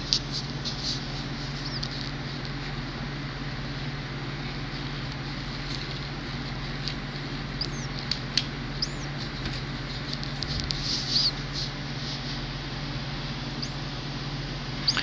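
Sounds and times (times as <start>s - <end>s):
steady low hum: 0.0s - 15.0s
nestling bird peeping: 0.4s - 2.4s, 6.5s - 12.0s, 13.0s - 15.0s.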